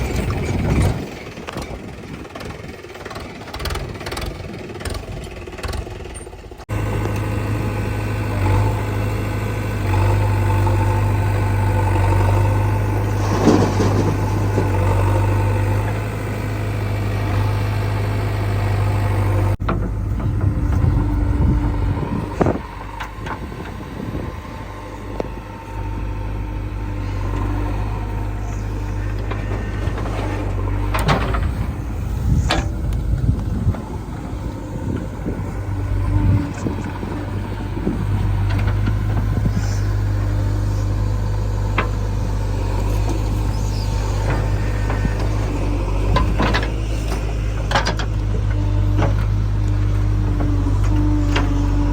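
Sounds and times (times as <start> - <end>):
diesel engines running: 0.0 - 51.9.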